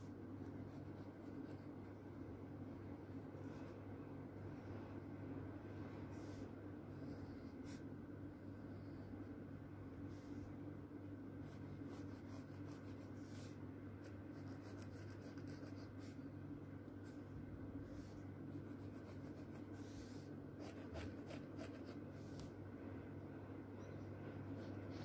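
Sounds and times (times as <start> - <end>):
steady low hum: 0.0 - 25.0
drawing tool scratching paper: 11.4 - 13.6, 14.3 - 16.2, 17.9 - 22.5.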